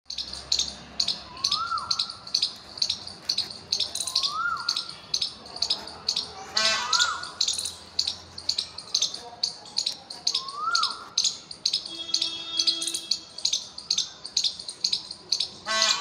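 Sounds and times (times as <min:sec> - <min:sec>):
sharp high bird chirp: 0:00.1 - 0:16.0
whistled bird note: 0:01.3 - 0:02.1.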